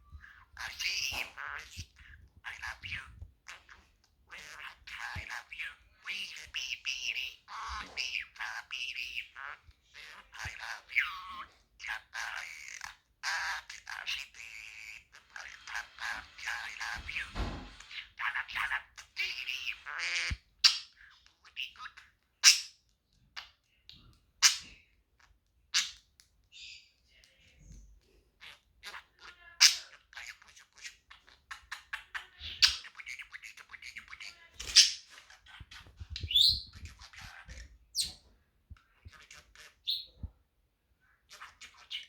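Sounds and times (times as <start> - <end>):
budgerigar chattering: 0.6 - 1.9.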